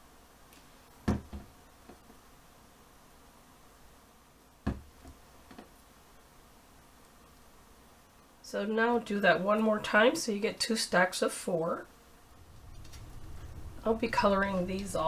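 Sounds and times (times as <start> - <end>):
soft knocks on table: 4.6 - 4.9.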